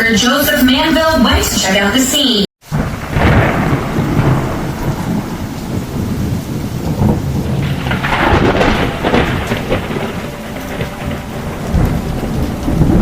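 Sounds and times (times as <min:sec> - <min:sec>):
thunder rumbling: 0:00.0 - 0:13.0
steady rain: 0:02.6 - 0:13.0.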